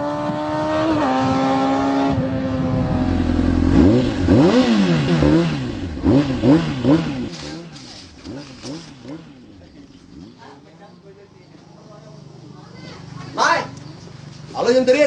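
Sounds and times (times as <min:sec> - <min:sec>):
engine revving: 0:00.0 - 0:10.7.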